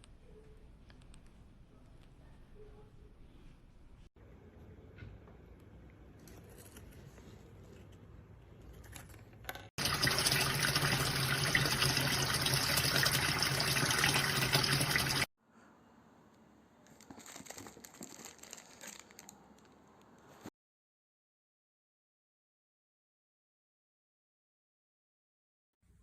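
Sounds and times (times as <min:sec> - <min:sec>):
faint handling sounds: 0:00.0 - 0:09.6, 0:16.4 - 0:20.5
water gushing through a valve: 0:09.8 - 0:15.3.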